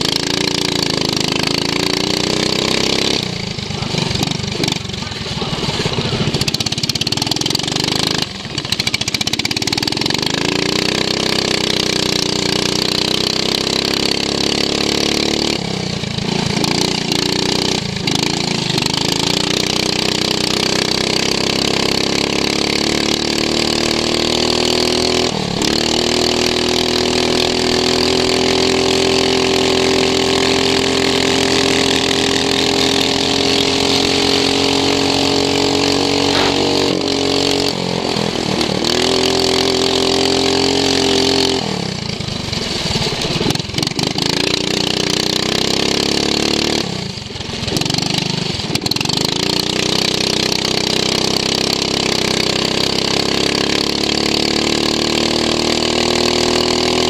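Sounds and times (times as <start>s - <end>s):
lawn mower engine revving: 0.0s - 57.0s.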